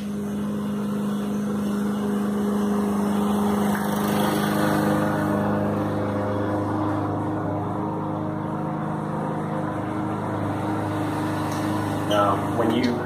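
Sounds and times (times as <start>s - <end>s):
engine humming: 0.0s - 13.0s.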